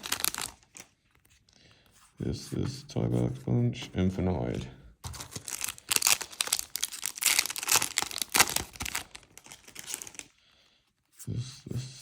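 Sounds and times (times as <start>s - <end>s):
foil wrapper tearing and crinkling: 0.0s - 0.9s, 5.2s - 10.3s.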